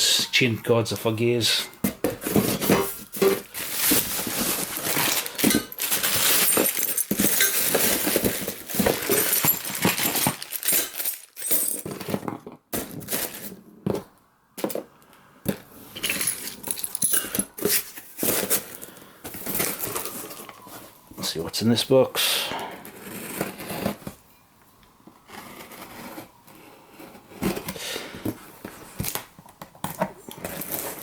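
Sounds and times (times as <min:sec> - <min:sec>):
plastic packaging rustling: 0:01.8 - 0:14.8, 0:16.0 - 0:21.0, 0:27.4 - 0:31.0
small metal parts clinking: 0:03.6 - 0:12.2, 0:16.0 - 0:18.3.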